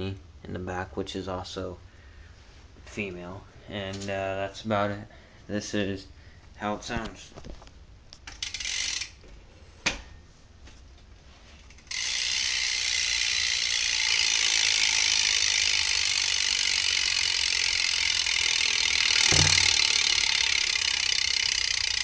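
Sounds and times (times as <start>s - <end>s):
freewheel ratchet buzzing: 8.2s - 9.2s, 11.7s - 22.0s
low thump: 19.3s - 19.9s.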